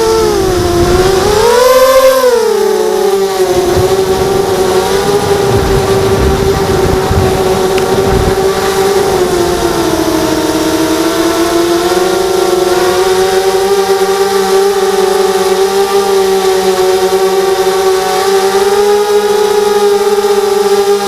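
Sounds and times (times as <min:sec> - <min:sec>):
drone motors whining: 0:00.0 - 0:21.0
low rumble: 0:03.7 - 0:09.9.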